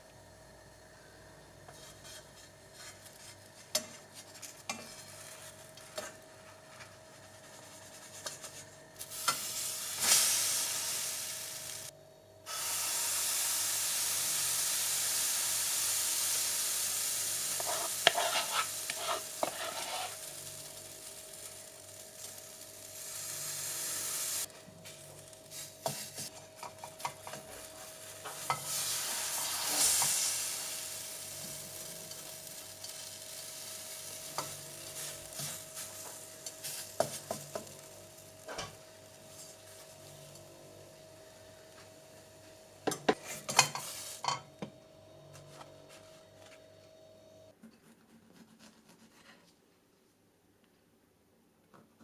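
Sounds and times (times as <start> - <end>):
faint hum: 0.0 - 12.5, 43.8 - 47.5
food sizzling in a pan: 8.3 - 11.9, 12.5 - 44.5
stirring clicks and scrapes: 17.6 - 20.2.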